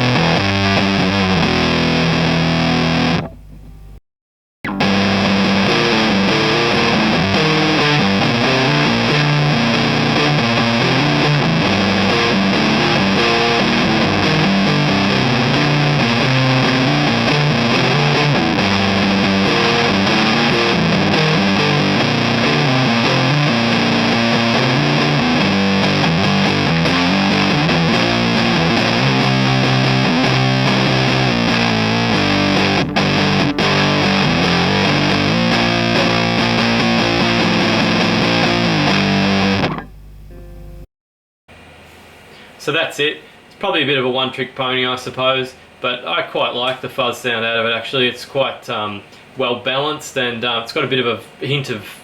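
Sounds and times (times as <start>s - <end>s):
fuzz electric guitar riffs: 0.0s - 4.0s, 4.6s - 40.8s.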